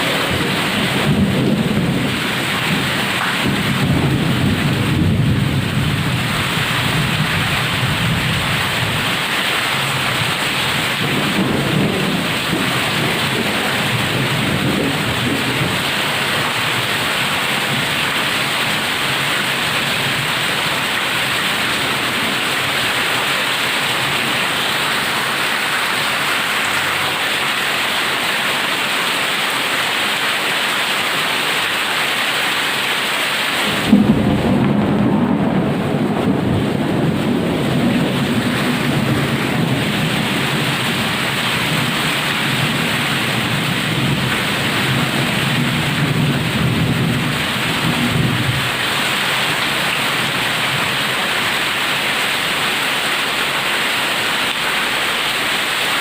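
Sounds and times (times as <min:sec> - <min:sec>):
low thunder rumbling: 0:00.0 - 0:26.2, 0:33.6 - 0:51.0
heavy rain falling: 0:00.0 - 0:56.0.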